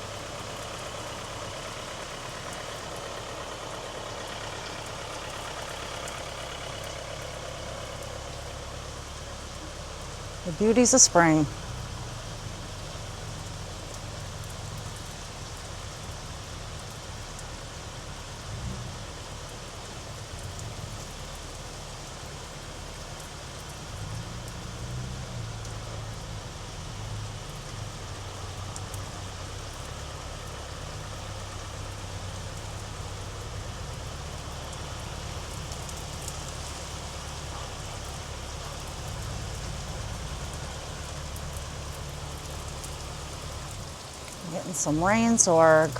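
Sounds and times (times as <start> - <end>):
rain falling on pavement: 0.0 - 10.7, 11.5 - 45.9
water drips: 19.4 - 45.9.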